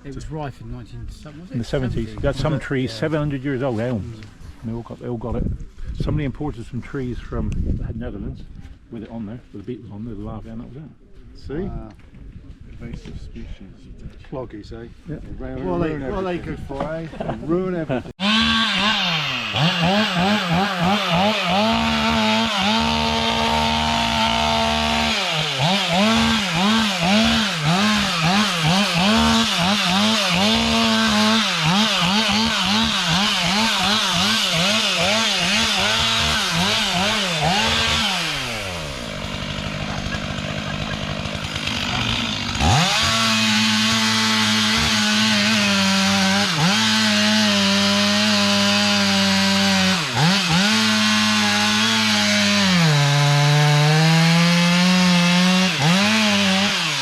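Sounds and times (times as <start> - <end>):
chainsaw revving: 18.2 - 57.0.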